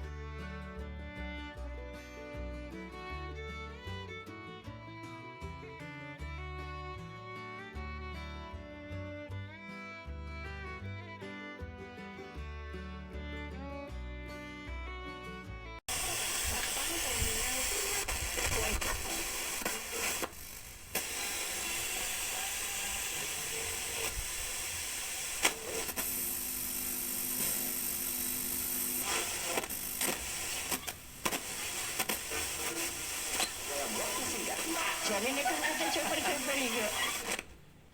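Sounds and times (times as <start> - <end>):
background music: 0.0 - 15.8
radio static hiss: 15.9 - 37.5
faint radio broadcast sound: 16.0 - 20.3, 27.3 - 37.5.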